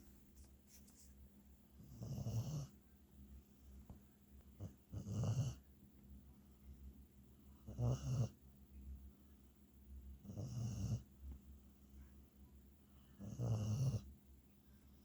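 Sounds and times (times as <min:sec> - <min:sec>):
dog snoring: 0:01.8 - 0:02.8, 0:04.6 - 0:05.6, 0:07.6 - 0:08.4, 0:10.2 - 0:11.1, 0:13.2 - 0:14.1.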